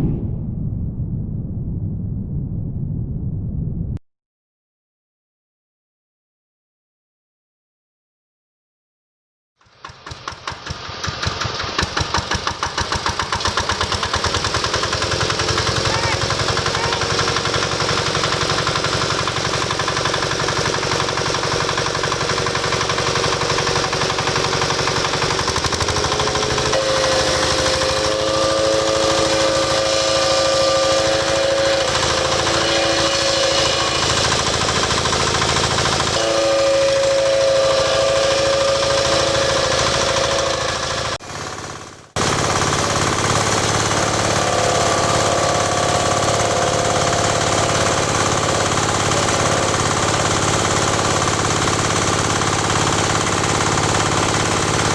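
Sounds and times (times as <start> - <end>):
steady whine: 0.0 - 4.0
wood crusher machine running: 9.6 - 54.9.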